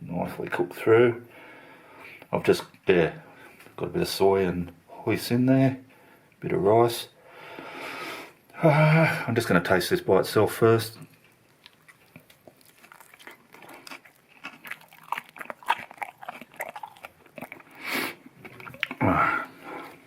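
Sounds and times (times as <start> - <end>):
breath: 1.3 - 2.3, 3.2 - 3.7, 5.9 - 6.3, 7.2 - 8.4, 19.0 - 20.0
chewing and crunching crispy chicken: 11.0 - 20.0.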